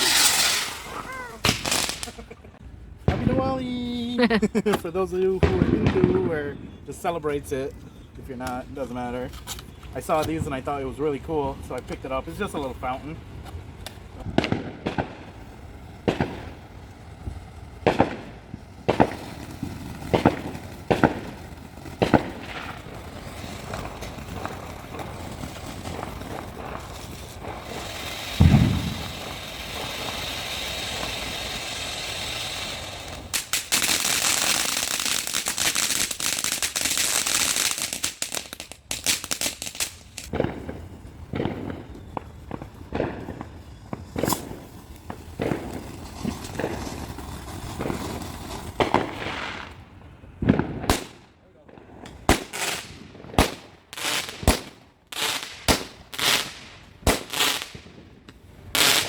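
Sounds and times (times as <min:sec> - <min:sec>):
firework hissing spray: 0:00.0 - 0:02.6, 0:18.9 - 0:40.3, 0:58.7 - 0:59.0
firework pops: 0:00.0 - 0:03.6, 0:13.4 - 0:15.4, 0:16.0 - 0:16.6, 0:17.2 - 0:30.2, 0:33.0 - 0:49.8, 0:50.4 - 0:59.0
dense firework crackling: 0:00.0 - 0:59.0
loud low firework thump: 0:28.4 - 0:29.1, 0:40.3 - 0:43.4.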